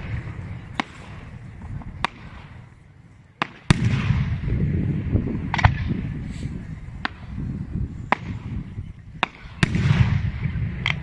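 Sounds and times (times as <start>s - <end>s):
loud firework bang: 9.2s - 11.0s.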